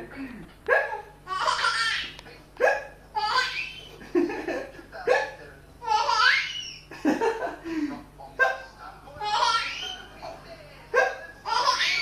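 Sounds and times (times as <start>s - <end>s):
baby belly laughter: 0.8s - 2.1s, 3.2s - 7.4s, 9.2s - 10.4s, 11.0s - 12.0s
man making fake hiccups: 2.6s - 3.0s.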